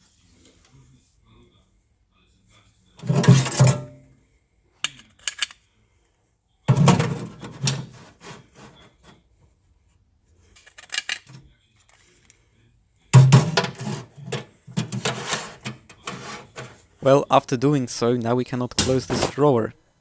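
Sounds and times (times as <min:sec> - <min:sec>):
rubbing and scraping: 0:03.0 - 0:04.0, 0:06.7 - 0:09.2, 0:13.2 - 0:17.1, 0:18.7 - 0:19.5.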